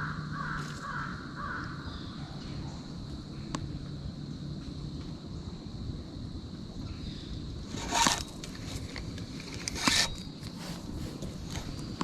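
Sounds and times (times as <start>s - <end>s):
crunching rustles: 7.7s - 12.0s.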